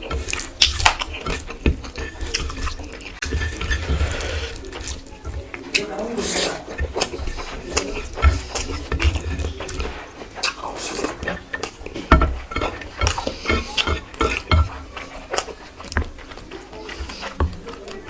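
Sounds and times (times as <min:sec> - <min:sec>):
plate clinking: 0:00.0 - 0:05.8, 0:11.1 - 0:17.9
chewing and mouth sounds: 0:00.0 - 0:18.0.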